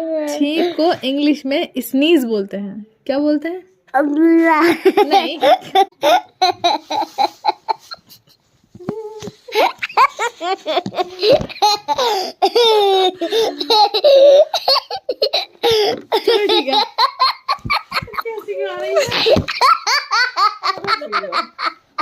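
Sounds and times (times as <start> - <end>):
young child laughing: 4.6 - 18.3
speech: 20.8 - 21.6.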